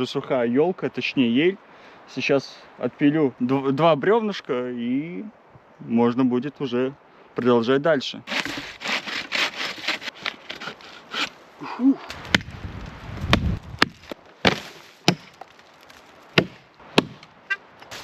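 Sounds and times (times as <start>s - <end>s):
sawing wood: 8.3s - 11.4s, 16.4s - 18.0s.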